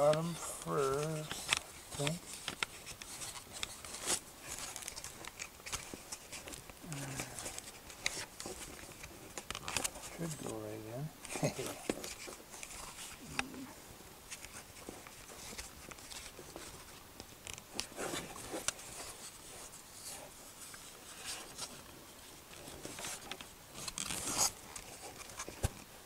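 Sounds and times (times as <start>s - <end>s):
plastic clicks and scrapes: 0.0s - 10.6s, 11.2s - 13.5s, 14.3s - 21.8s.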